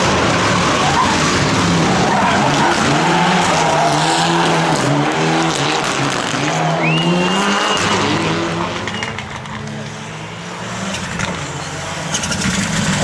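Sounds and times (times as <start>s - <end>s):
rally car engine at full throttle: 0.0s - 13.0s
high whistle: 6.8s - 8.2s.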